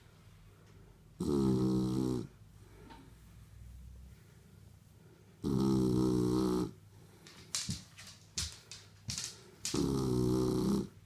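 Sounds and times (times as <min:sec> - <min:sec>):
puppy snoring: 0:01.2 - 0:02.4, 0:05.4 - 0:06.8, 0:09.7 - 0:11.0.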